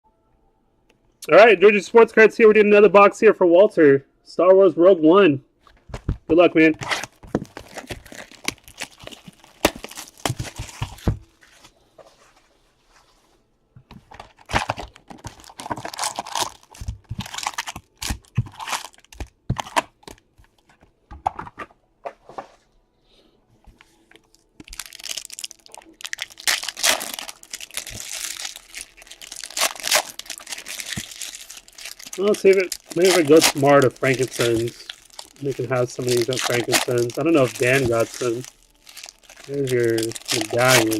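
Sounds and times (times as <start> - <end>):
packaging tearing and crinkling: 6.8 - 11.1, 14.3 - 20.2, 24.3 - 40.9.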